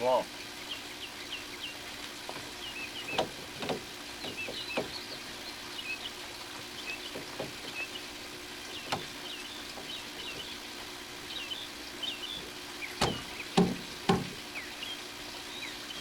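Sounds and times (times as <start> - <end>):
small birds chirping: 0.0 - 16.0
plastic pipe knocks and taps: 3.1 - 5.0, 8.8 - 10.5, 13.0 - 14.4.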